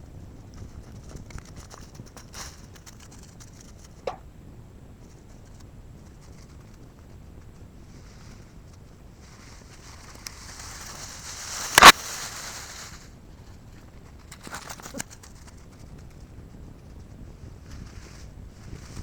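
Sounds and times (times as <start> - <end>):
steady hiss: 7.8 - 13.2
loud sharp crack: 11.6 - 12.6.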